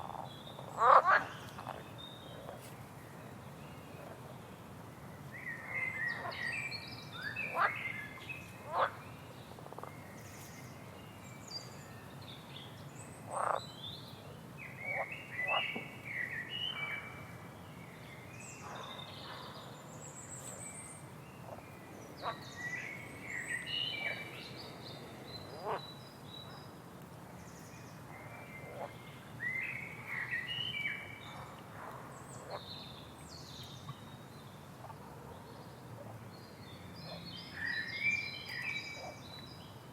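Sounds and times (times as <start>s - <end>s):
frogs calling: 0.0s - 1.8s, 13.3s - 13.6s
low background hiss: 0.0s - 39.9s.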